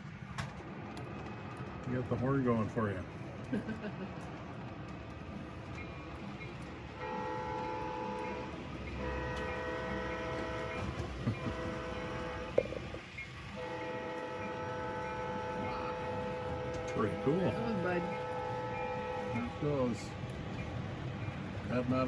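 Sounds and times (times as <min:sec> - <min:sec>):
train rumbling on track: 0:00.0 - 0:22.0
model locomotive air horn: 0:07.0 - 0:20.0.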